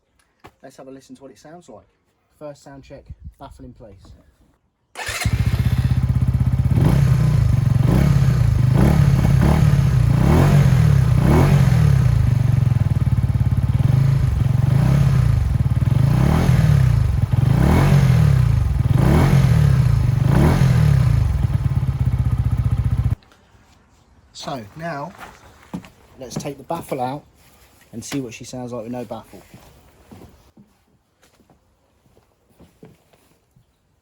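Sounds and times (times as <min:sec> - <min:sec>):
motorcycle engine revving: 0:05.0 - 0:23.2.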